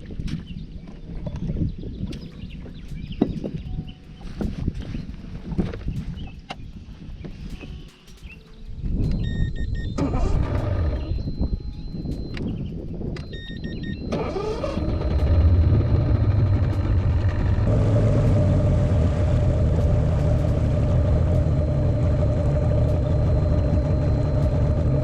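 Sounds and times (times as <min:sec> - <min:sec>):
outboard motor revving: 0:10.0 - 0:11.2, 0:14.1 - 0:25.0.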